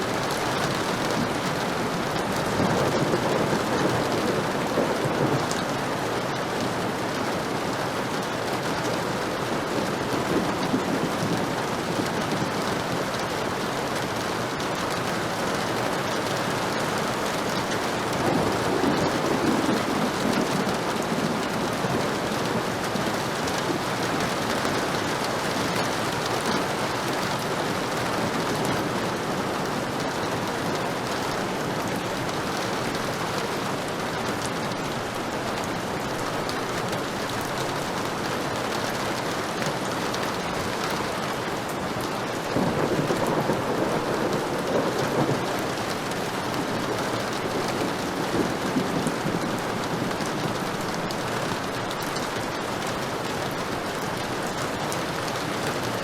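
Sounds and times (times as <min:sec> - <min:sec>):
heavy rain falling: 0:00.0 - 0:56.0
thunder rolling: 0:00.1 - 0:05.9, 0:18.1 - 0:22.7, 0:42.5 - 0:51.1.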